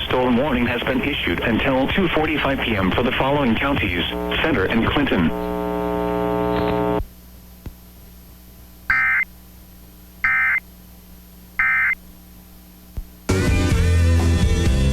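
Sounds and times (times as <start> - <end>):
faint steady hum: 0.0 - 13.3
shrill digital tone bursts: 8.9 - 9.2.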